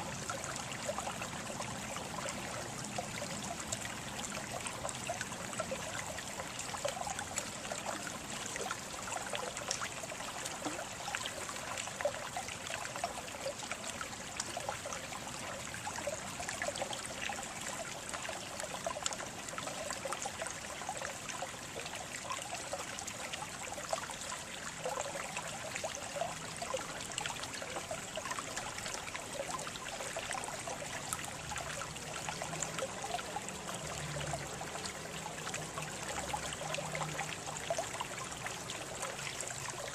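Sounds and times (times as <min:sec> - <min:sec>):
water trickling in a stream: 0:00.0 - 0:39.9.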